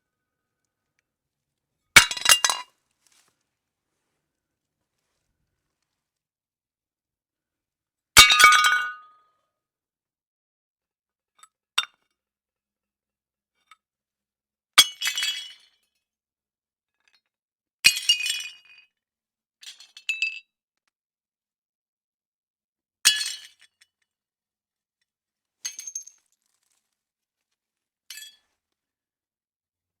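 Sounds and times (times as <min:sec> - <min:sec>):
ceramic plates smashing: 0:02.0 - 0:02.6.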